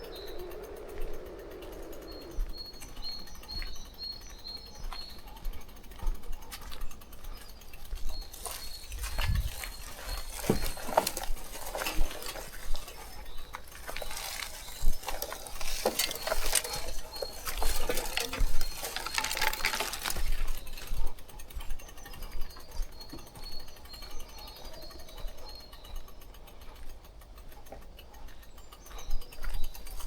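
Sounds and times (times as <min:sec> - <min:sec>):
faint high whine: 0:00.0 - 0:04.2
wind rumble on microphone: 0:00.0 - 0:04.4, 0:07.9 - 0:21.7
bike rattling over rough ground: 0:00.0 - 0:30.0.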